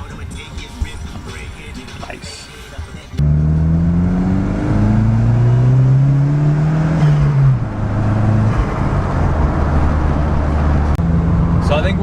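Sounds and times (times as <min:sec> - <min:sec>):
turbocharged car engine accelerating: 0:03.2 - 0:12.0.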